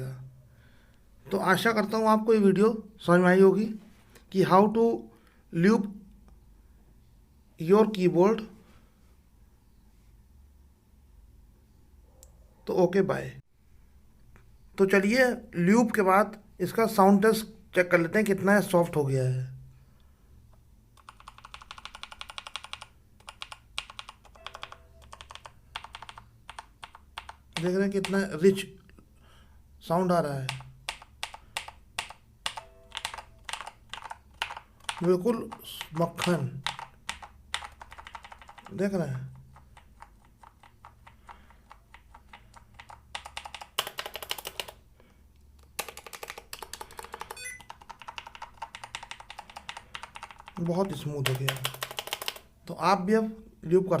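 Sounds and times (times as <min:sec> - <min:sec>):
mechanical keyboard typing: 0:21.0 - 0:28.2, 0:30.5 - 0:44.8, 0:45.6 - 0:52.5.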